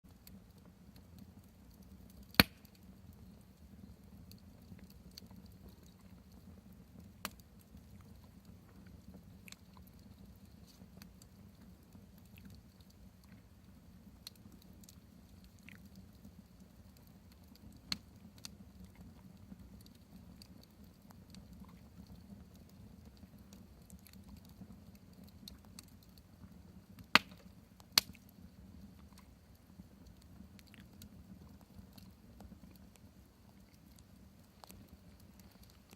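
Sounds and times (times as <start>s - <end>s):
campfire crackling: 0.1s - 35.9s
sharp fire pops: 2.1s - 2.9s, 27.0s - 28.3s.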